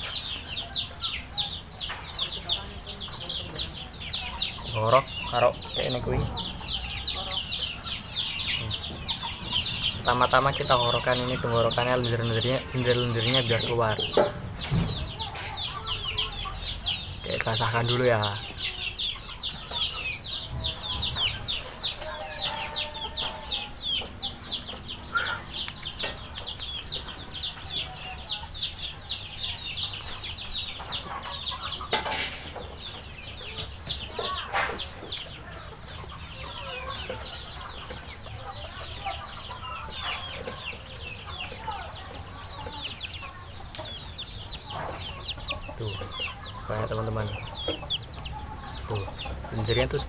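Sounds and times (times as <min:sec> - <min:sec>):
chickens peeping and clucking: 0:00.0 - 0:50.0.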